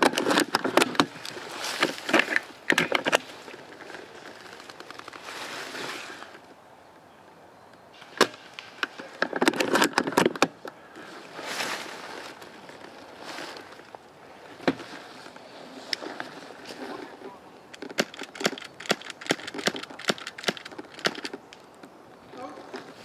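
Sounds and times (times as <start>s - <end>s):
twigs snapping: 0.0s - 5.4s
rustling in dry vegetation: 0.0s - 23.0s.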